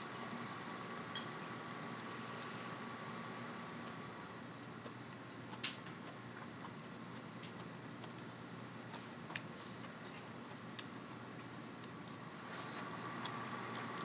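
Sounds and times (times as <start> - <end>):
tableware clicking: 1.1 - 1.4.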